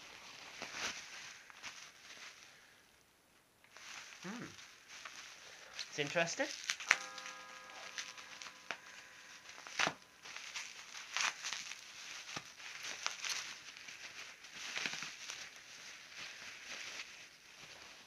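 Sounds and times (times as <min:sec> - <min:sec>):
packing paper crinkling: 0:00.0 - 0:02.7, 0:03.7 - 0:18.0.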